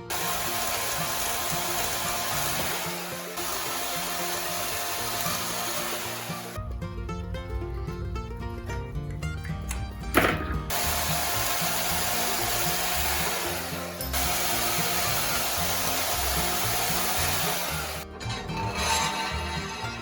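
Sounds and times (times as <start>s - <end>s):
metalworking tool hissing on rebar: 0.0s - 6.6s, 10.7s - 20.0s
background music: 0.0s - 20.0s.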